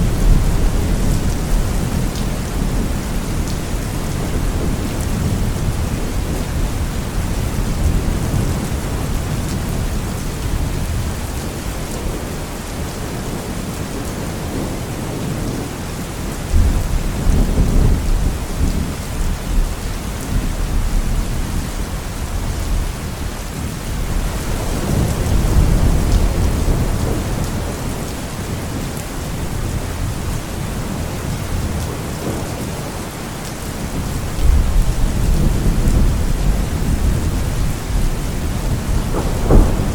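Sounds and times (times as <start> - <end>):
rolling thunder: 0.0 - 12.4, 16.5 - 32.6, 33.8 - 39.9
heavy rain: 0.0 - 39.9
thunderclap: 16.5 - 22.8, 34.0 - 39.9.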